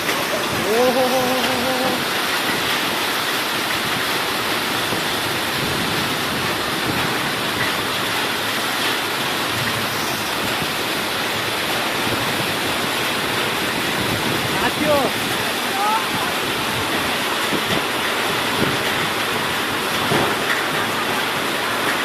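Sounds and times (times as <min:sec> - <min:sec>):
heavy rain pouring: 0:00.0 - 0:22.0.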